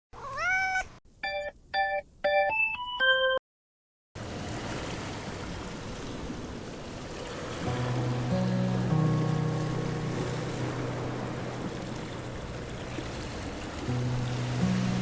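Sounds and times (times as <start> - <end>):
surf: 4.2 - 15.0
wind: 4.2 - 15.0.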